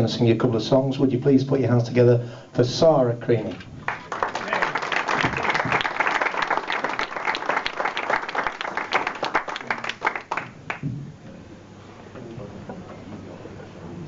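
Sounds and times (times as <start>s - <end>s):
audience applauding: 3.8s - 10.8s.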